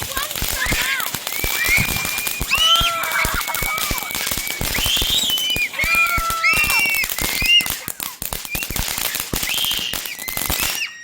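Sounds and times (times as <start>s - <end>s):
fireworks crackling and banging: 0.0s - 11.0s
firework whistles: 0.1s - 11.0s.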